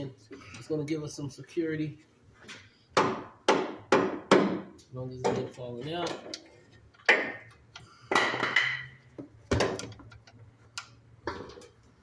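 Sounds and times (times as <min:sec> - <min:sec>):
sharp knocks on wood: 0:03.0 - 0:04.7.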